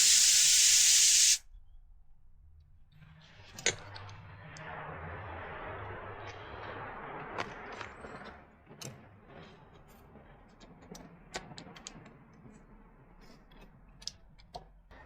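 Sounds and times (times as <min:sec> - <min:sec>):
compressed air rushing into tyre: 0:00.0 - 0:01.4.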